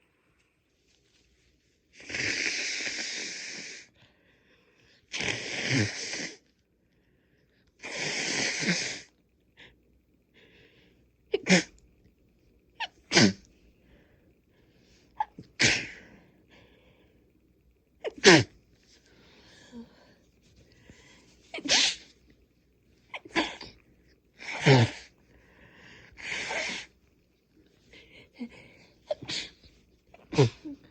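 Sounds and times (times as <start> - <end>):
congested nose blowing: 2.0 - 3.9, 5.1 - 6.5, 7.8 - 9.1, 11.4 - 11.7, 13.1 - 13.4, 15.2 - 16.1, 18.1 - 18.5, 21.5 - 22.1, 24.4 - 25.1, 26.2 - 26.9
sharp sneezes: 11.3 - 11.7, 12.8 - 13.5, 15.2 - 16.0, 18.0 - 18.5, 21.5 - 22.1, 26.2 - 26.9.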